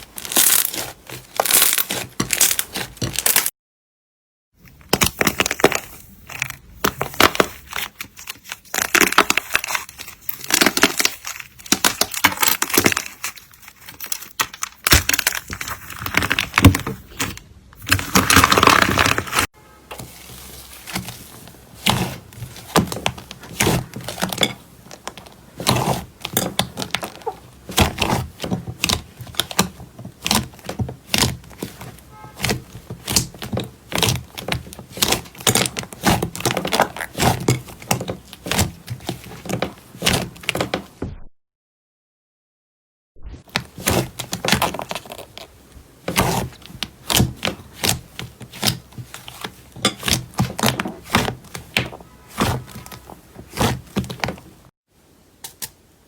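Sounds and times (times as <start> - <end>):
slime crackling and popping: 0.0 - 3.5, 4.8 - 16.6, 21.6 - 40.7.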